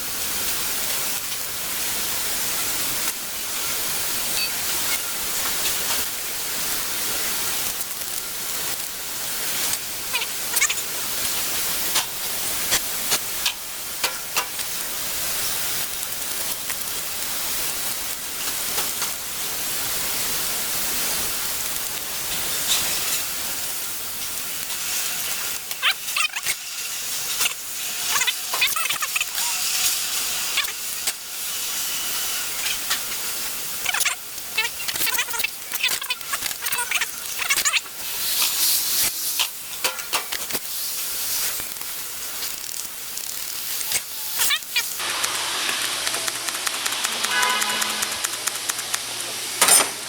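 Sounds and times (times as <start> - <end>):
spray hissing: 1.0 - 48.8.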